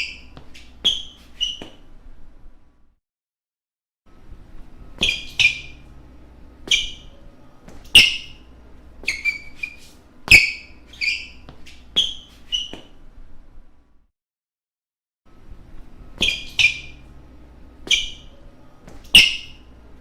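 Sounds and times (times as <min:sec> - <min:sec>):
shoe soles squeaking on floor: 0:00.0 - 0:01.9, 0:04.9 - 0:13.0, 0:16.1 - 0:17.2, 0:17.8 - 0:19.8.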